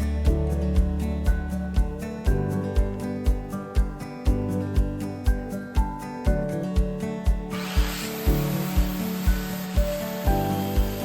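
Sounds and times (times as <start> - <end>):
background music with steady beat: 0.0 - 11.0
steady hiss: 3.0 - 11.0.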